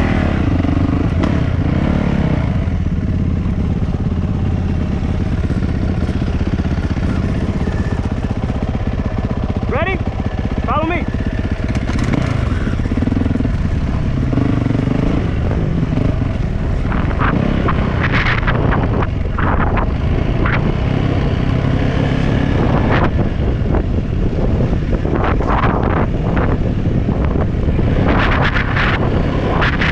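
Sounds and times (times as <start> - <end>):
dirt bike engine revving: 0.0 - 23.8.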